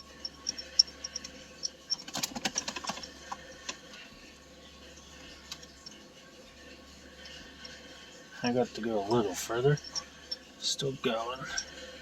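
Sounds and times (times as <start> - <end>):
hand tools clicking on metal: 0.0 - 3.8, 9.1 - 10.4.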